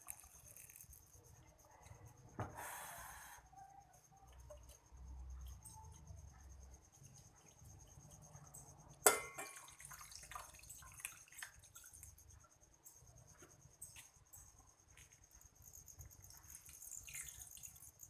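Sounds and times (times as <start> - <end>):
water pouring into container: 9.5 - 12.0.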